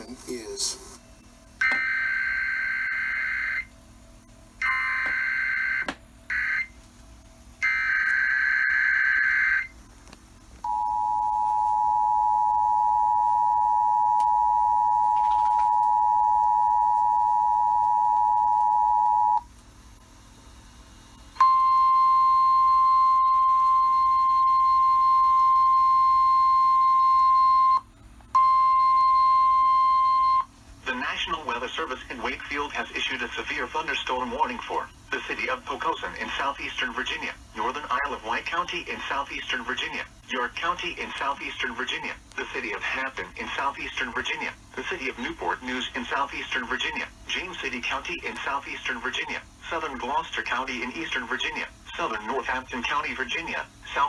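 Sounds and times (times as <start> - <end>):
steady alarm tone: 0.0 - 27.8, 28.4 - 54.0
two-tone attention signal: 21.4 - 27.8
buzzing digital data bursts: 28.5 - 54.0.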